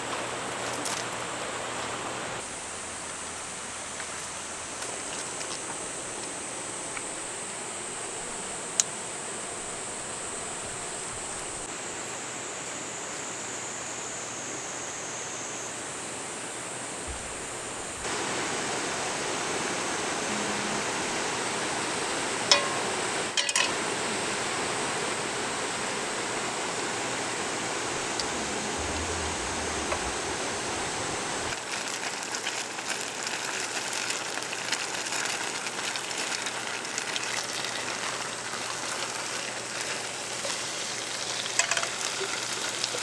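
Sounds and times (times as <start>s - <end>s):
mountain stream rushing: 18.0s - 40.4s.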